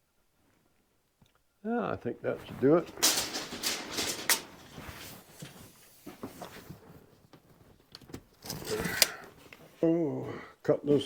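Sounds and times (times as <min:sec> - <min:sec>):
scraping rustle: 0:02.3 - 0:07.1.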